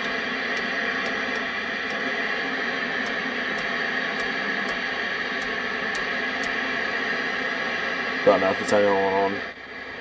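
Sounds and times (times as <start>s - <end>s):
radio static hiss: 0.0s - 10.0s.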